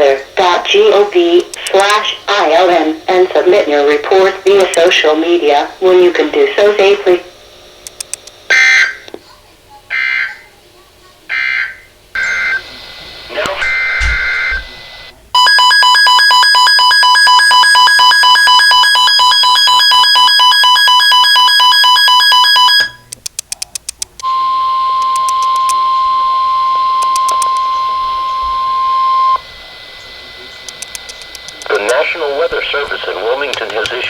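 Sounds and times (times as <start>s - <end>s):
steady warning tone: 0.0s - 9.2s, 11.3s - 34.0s
clicks: 1.4s - 2.0s, 4.4s - 4.9s, 7.8s - 8.4s, 22.8s - 24.3s, 25.0s - 25.8s, 27.0s - 27.8s, 30.6s - 32.0s
electronic alarm beeping rapidly: 11.4s - 12.6s, 13.6s - 14.8s, 15.4s - 23.2s, 24.2s - 29.4s.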